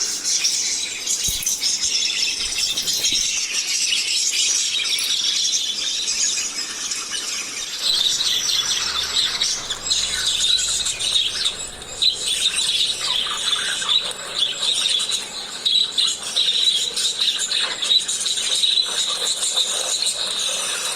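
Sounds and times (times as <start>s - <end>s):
parrots chattering and chirping: 0.0s - 3.6s, 7.8s - 16.3s.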